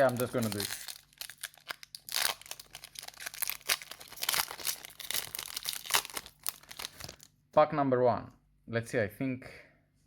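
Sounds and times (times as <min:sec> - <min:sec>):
foil wrapper crinkling and tearing: 0:00.0 - 0:07.3.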